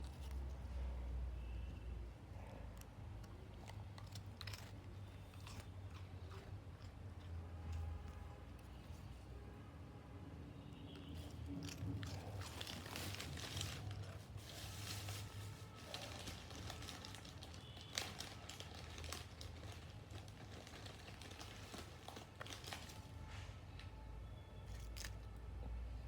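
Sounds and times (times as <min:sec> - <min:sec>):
plastic packet crinkling: 0:11.7 - 0:23.2.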